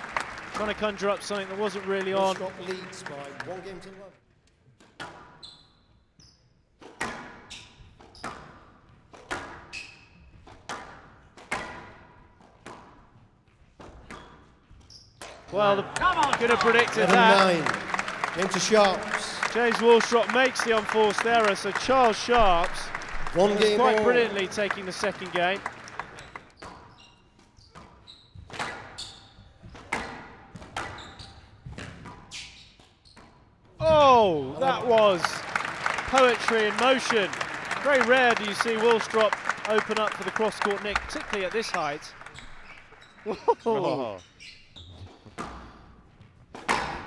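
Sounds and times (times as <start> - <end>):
shoes squeaking on floor: 5.4 - 6.6, 7.4 - 8.5, 9.6 - 10.4, 26.2 - 29.7, 30.8 - 31.7, 32.3 - 33.4, 44.2 - 46.4
squash ball hitting rackets and walls: 6.8 - 13.2, 27.7 - 33.4, 45.0 - 47.0
squash ball struck by rackets: 46.5 - 47.0.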